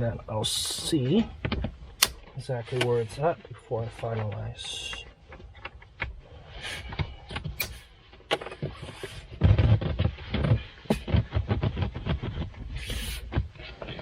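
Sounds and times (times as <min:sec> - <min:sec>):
plastic and fabric rustling: 0:00.0 - 0:14.0
heavy thumps: 0:06.0 - 0:14.0.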